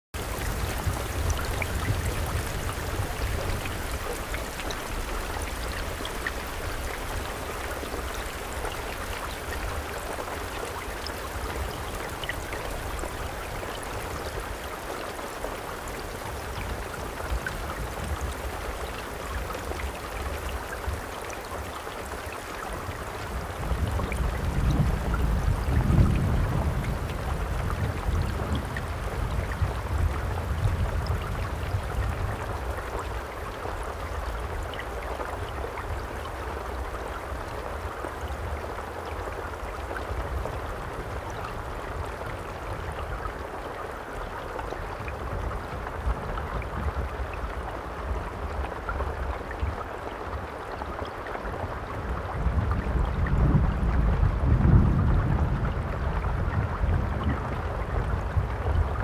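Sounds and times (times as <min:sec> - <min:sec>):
steady rain falling: 0:00.2 - 0:59.0.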